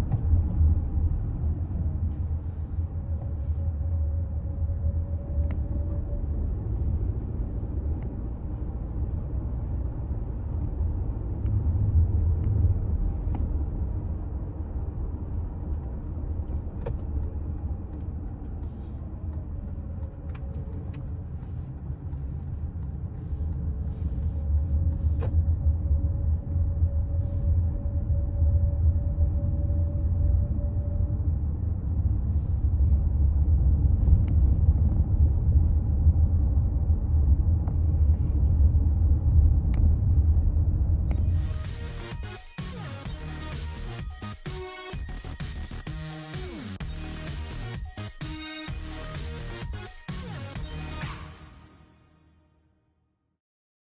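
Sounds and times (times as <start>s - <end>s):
car driving rumble: 0.0s - 44.4s.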